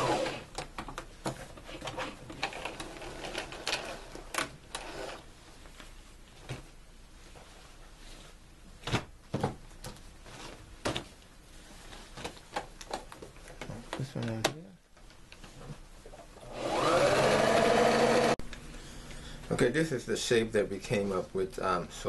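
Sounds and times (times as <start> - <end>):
sewing machine running: 16.4 - 18.4.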